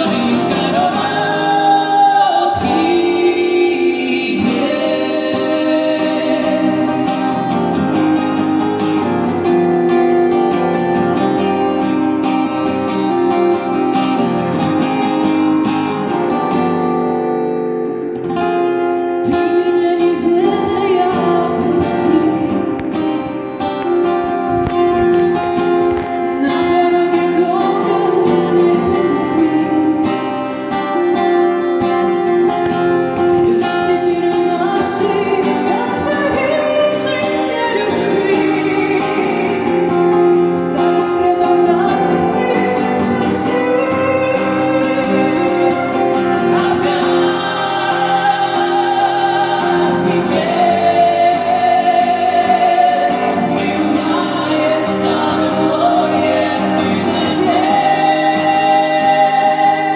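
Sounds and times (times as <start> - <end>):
woman singing slow song: 0.0 - 8.0, 19.2 - 23.8, 25.8 - 31.0, 33.2 - 59.9
guitar accompaniment: 0.0 - 59.9.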